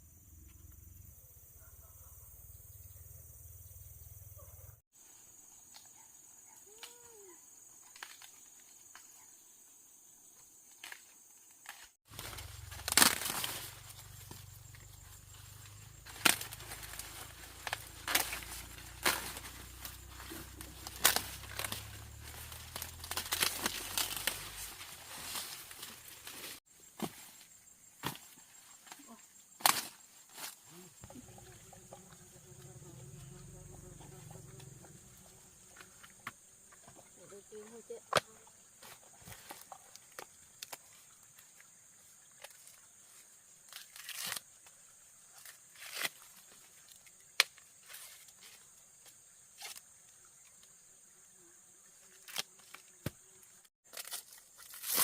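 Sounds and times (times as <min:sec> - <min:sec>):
high insect hum: 0:00.0 - 0:55.0
rustling of dry stalks: 0:10.7 - 0:32.2, 0:38.8 - 0:50.0, 0:52.0 - 0:55.0
corn stalks snapping: 0:11.6 - 0:14.4, 0:16.1 - 0:27.1, 0:29.6 - 0:30.6, 0:43.7 - 0:44.5, 0:45.4 - 0:46.4, 0:52.2 - 0:53.2, 0:53.9 - 0:55.0.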